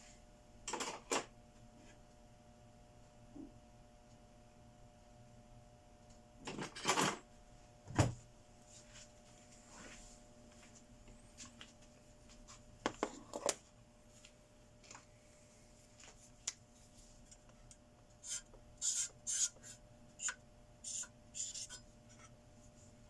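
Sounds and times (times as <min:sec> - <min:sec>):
metal scraping strokes: 0:18.2 - 0:22.3.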